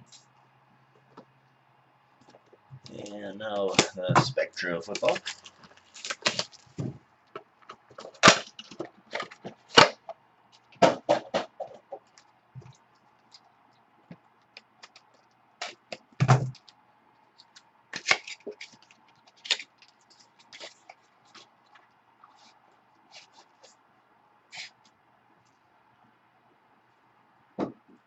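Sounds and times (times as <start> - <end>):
faint steady hum: 0.0 - 28.0
cardboard and wrapper crinkling: 4.3 - 9.9, 17.4 - 22.5.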